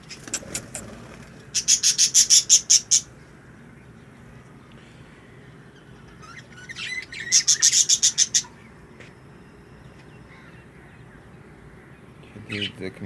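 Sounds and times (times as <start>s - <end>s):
budgerigars chirping: 1.5s - 3.1s, 5.8s - 8.8s, 10.1s - 13.0s.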